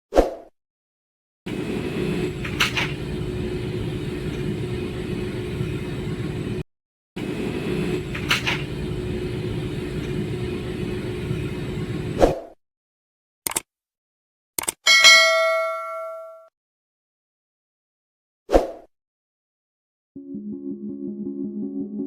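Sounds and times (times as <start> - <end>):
arc welding hiss and hum: 1.5 - 6.6, 7.2 - 12.2.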